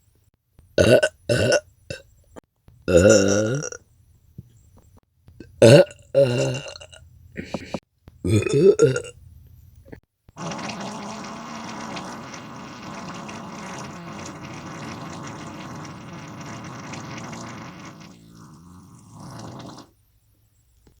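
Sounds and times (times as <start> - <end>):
long low buzzing fart: 10.4 - 19.9.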